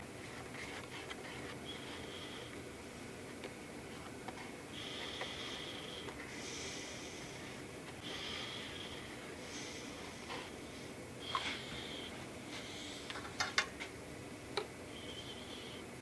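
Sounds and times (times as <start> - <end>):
steady low hum: 0.0 - 16.0
person breathing through the nose: 4.7 - 13.1.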